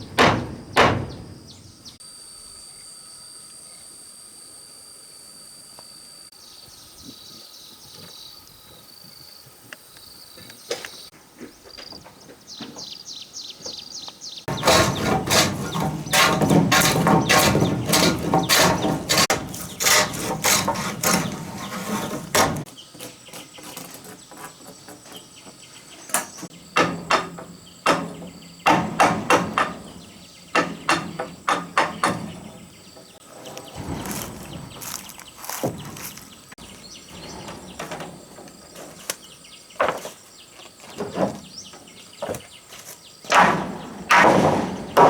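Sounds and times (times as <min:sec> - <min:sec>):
hammering on wood: 0:00.0 - 0:01.4, 0:14.5 - 0:22.6, 0:26.8 - 0:32.6, 0:43.3 - 0:45.0.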